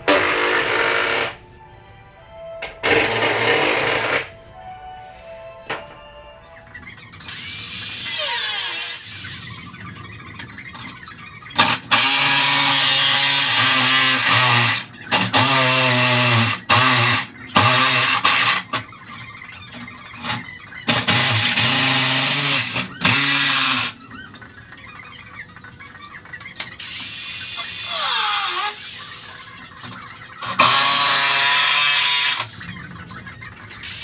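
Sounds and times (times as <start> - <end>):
power tool on sheet metal: 0.0 - 1.4, 2.7 - 4.4, 7.3 - 9.4, 11.6 - 18.8, 20.2 - 24.0, 26.8 - 29.4, 30.4 - 32.6.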